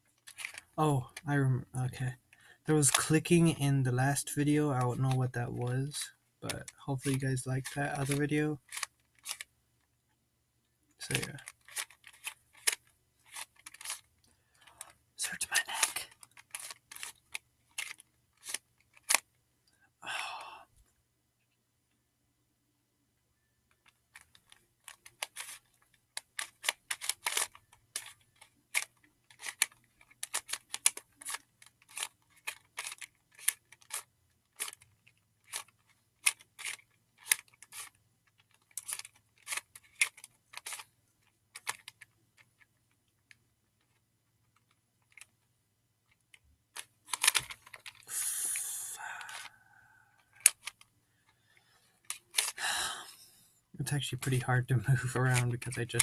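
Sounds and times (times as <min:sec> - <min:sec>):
puzzle cube clicking: 0:00.2 - 0:01.3, 0:02.8 - 0:05.2, 0:06.5 - 0:09.5, 0:11.0 - 0:19.3, 0:23.8 - 0:45.3, 0:46.7 - 0:49.6, 0:50.2 - 0:50.9, 0:52.0 - 0:53.1, 0:53.9 - 0:56.0
rustling hiss: 0:48.0 - 0:49.5.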